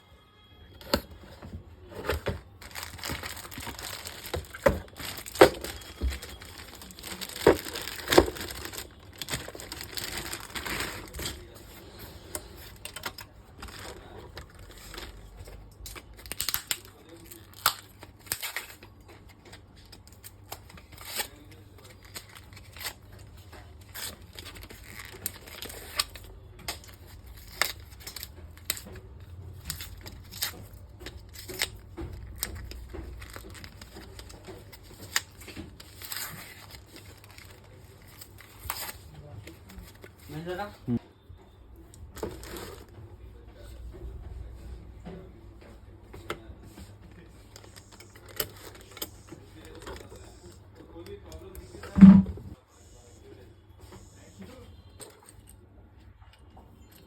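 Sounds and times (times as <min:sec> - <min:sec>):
packaging crinkling: 0:01.8 - 0:11.7, 0:29.6 - 0:39.0, 0:42.1 - 0:42.9.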